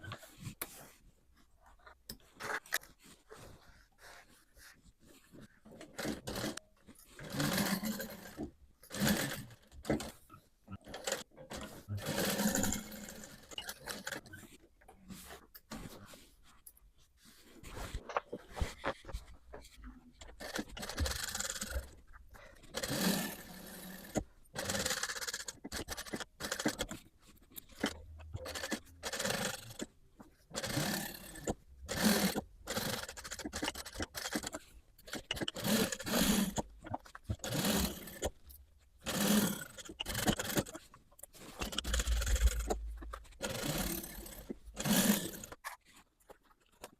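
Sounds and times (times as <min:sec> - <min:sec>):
fabric scraping and rustling: 0:14.3 - 0:20.4.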